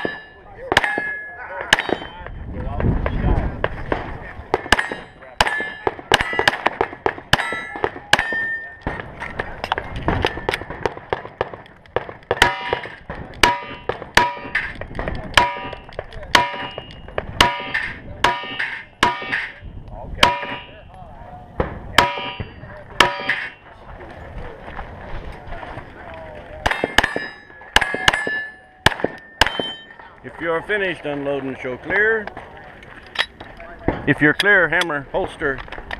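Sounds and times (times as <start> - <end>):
steel plate clanging: 0.0 - 2.2, 4.5 - 6.7, 7.3 - 9.4, 12.4 - 14.8, 15.4 - 19.6, 20.2 - 20.8, 22.0 - 23.6, 26.7 - 30.0
pistol shots: 3.9 - 19.6, 26.6 - 30.0.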